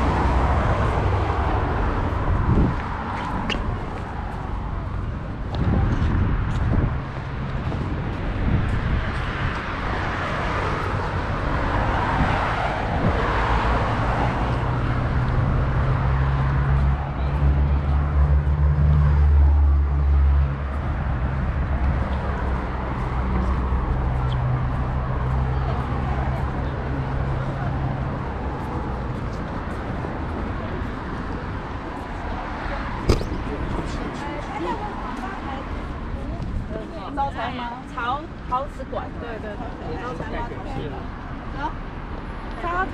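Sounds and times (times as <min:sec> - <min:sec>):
cars passing: 0:00.0 - 0:42.9
vehicle engine rumbling: 0:32.9 - 0:34.9.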